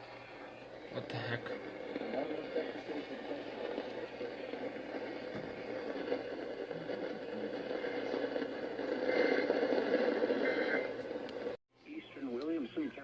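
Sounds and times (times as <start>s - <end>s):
radio static: 0.0s - 13.0s.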